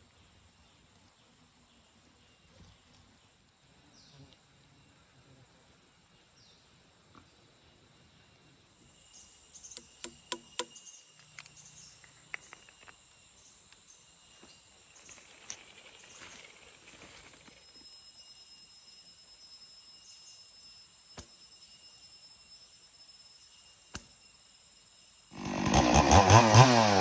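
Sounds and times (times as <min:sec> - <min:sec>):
high-pitched insect chorus: 0:07.6 - 0:25.4
sharp clicks: 0:09.7 - 0:13.0.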